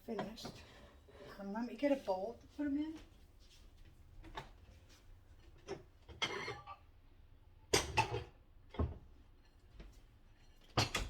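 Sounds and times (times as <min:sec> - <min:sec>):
kitchenware knocks and clatters: 0:05.6 - 0:06.7, 0:07.7 - 0:09.1, 0:10.5 - 0:11.0.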